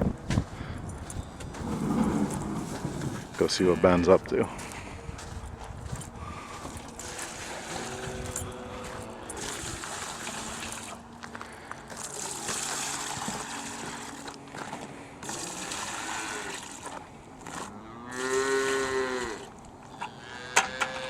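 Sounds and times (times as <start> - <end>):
steady rushing noise: 1.5 - 5.5.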